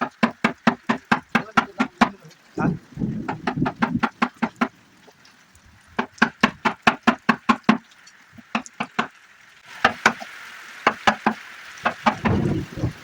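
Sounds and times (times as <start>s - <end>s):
steady hiss: 0.0s - 13.0s
hammer blows on wood: 10.9s - 12.9s.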